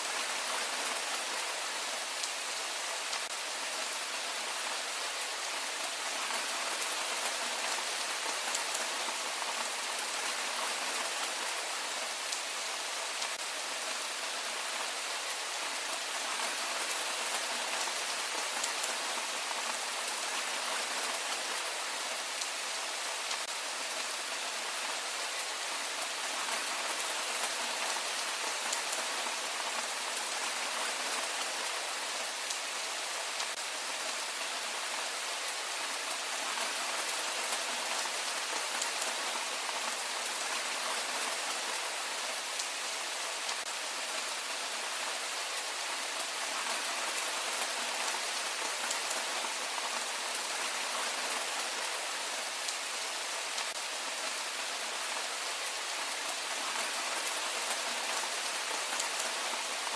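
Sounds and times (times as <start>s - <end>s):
heavy rain falling: 0.0s - 59.9s.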